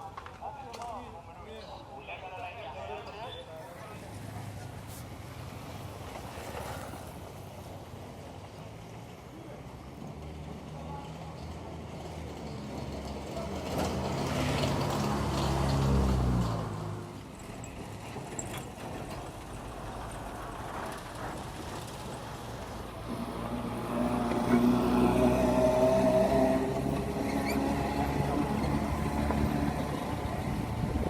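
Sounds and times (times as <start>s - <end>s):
vehicle engine hum: 12.0s - 31.0s.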